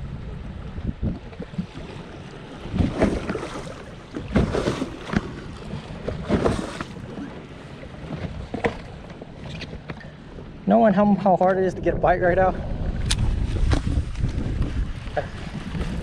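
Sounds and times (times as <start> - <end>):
water slapping boat hull: 0.0 - 16.0
wind on microphone: 0.0 - 16.0.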